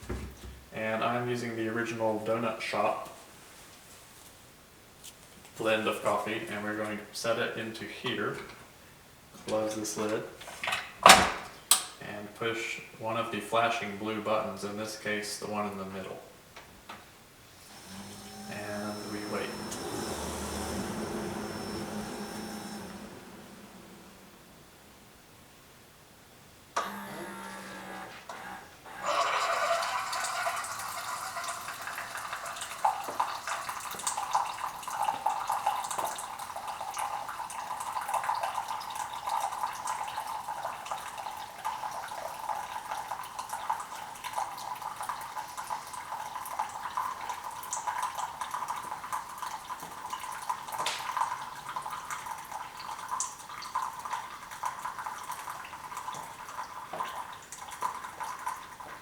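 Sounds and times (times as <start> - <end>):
coffee maker pump hum: 17.4 - 25.2, 26.8 - 59.0
coffee streaming into mug: 17.5 - 24.6, 26.8 - 59.0.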